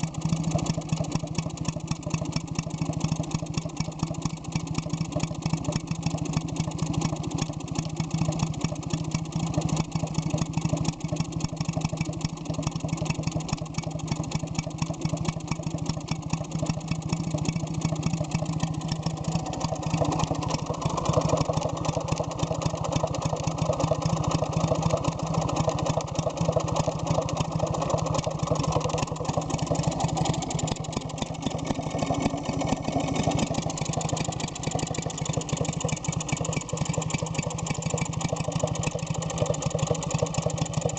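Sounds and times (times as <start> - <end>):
stationary engine running: 0.0 - 40.9.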